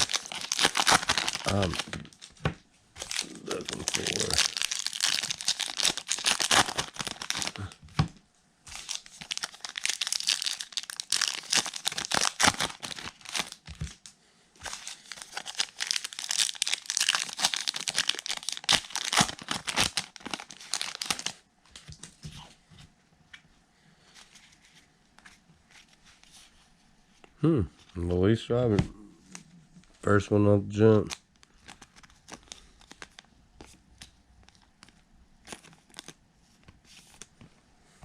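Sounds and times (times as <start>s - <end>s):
wrapper tearing and crinkling: 0.0s - 2.4s, 3.0s - 7.8s, 8.7s - 14.0s, 14.6s - 21.4s, 34.5s - 36.2s.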